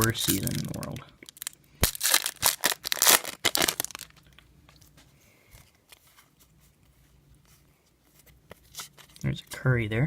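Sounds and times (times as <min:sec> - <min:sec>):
foil wrapper ripping and crinkling: 0:00.0 - 0:04.2
faint handling sounds: 0:00.0 - 0:10.0.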